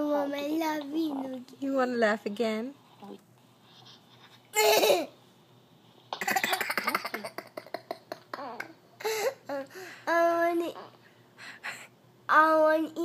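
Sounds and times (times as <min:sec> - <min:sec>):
child giggling: 0:04.6 - 0:05.2, 0:06.2 - 0:09.4.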